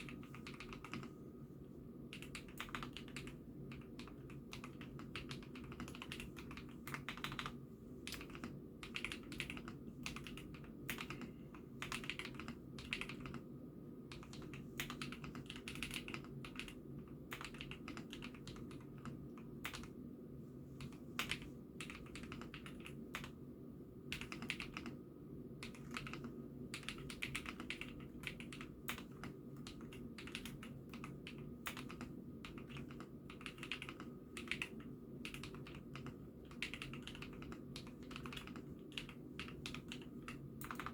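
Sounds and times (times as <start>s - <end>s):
mechanical keyboard typing: 0.0s - 1.1s, 2.1s - 13.4s, 14.1s - 19.9s, 20.8s - 23.4s, 24.1s - 25.0s, 25.6s - 40.9s.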